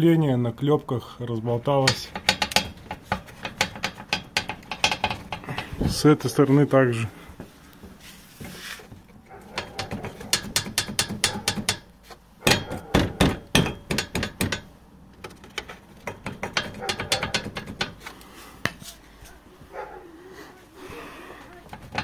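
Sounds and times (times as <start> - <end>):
metal bracket clacking: 1.8 - 5.8, 9.3 - 18.0
single metal knocks: 9.6 - 18.0.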